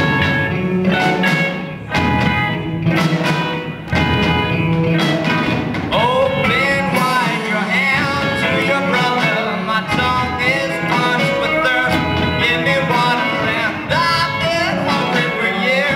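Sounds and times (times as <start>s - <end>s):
rock band playing live: 0.0s - 15.9s
person singing: 5.9s - 15.9s.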